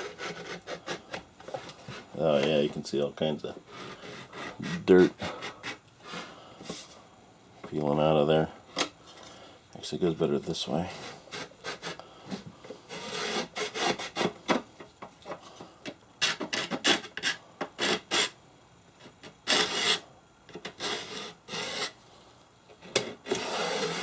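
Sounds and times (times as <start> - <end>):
hand scraper scraping wood: 0.0 - 2.6, 3.7 - 6.8, 10.9 - 12.0, 12.9 - 14.6, 16.2 - 18.4, 19.2 - 22.0, 22.8 - 24.0.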